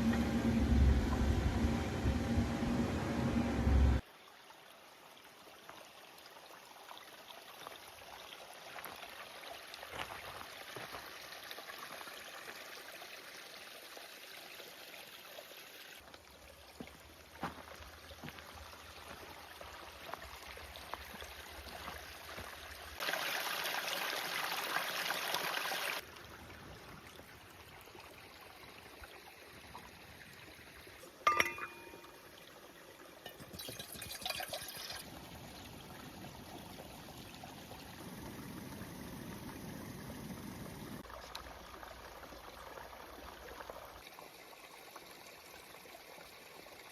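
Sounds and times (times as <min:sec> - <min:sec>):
mountain stream running: 0:00.0 - 0:46.9
short clink: 0:31.3 - 0:32.2.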